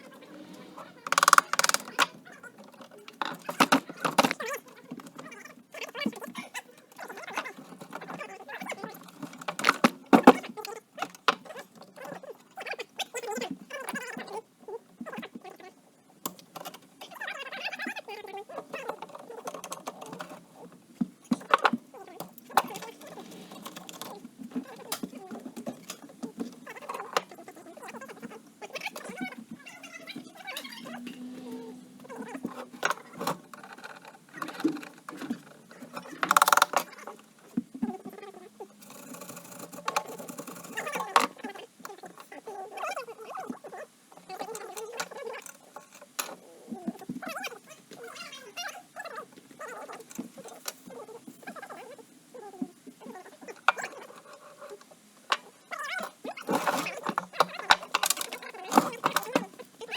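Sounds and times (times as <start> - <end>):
clatter of tools and parts: 0.1 - 12.3, 18.7 - 27.4, 28.2 - 38.2, 38.8 - 41.4, 44.2 - 47.3, 53.4 - 59.9
hand tools clicking and tapping: 1.0 - 2.2, 32.0 - 37.6.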